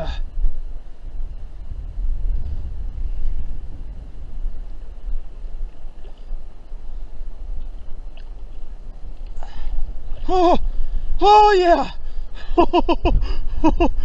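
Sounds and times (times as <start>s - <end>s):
wind buffeting microphone: 0.0s - 14.0s
river water rushing: 0.7s - 12.4s.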